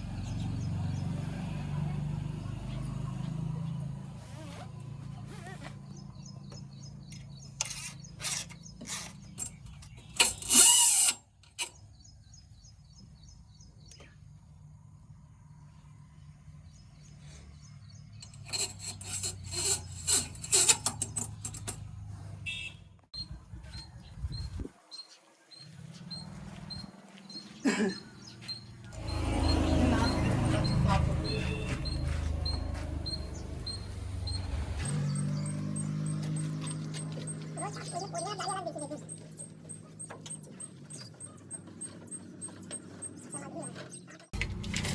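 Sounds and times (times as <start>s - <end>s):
sharp clatter: 7.0s - 11.8s, 18.2s - 22.0s
high ticking chirp: 26.1s - 44.1s
diesel engine running: 28.4s - 44.9s.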